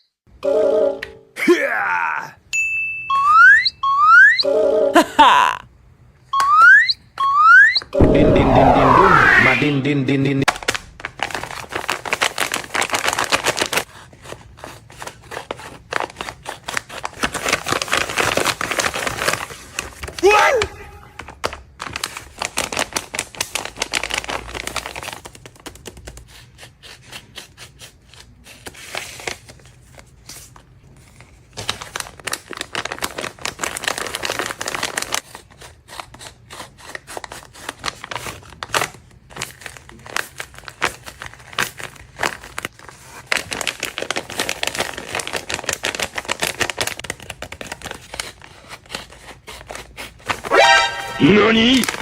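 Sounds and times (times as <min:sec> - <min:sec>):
paper crinkling and rustling: 0:10.5 - 0:20.2, 0:21.2 - 0:26.5, 0:27.8 - 0:50.5.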